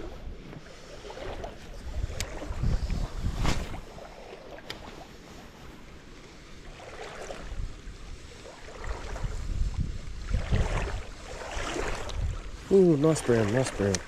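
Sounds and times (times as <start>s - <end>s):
wind buffeting microphone: 0.0s - 4.2s, 7.2s - 14.0s.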